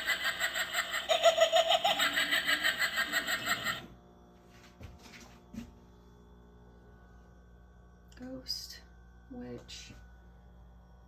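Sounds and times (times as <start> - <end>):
recorded laugh from small speaker: 0.0 - 3.9.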